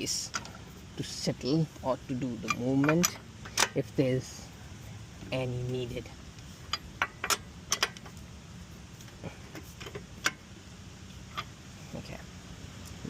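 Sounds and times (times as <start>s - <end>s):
wheel nuts clinking: 2.1s - 4.4s, 5.2s - 8.2s, 9.0s - 11.6s.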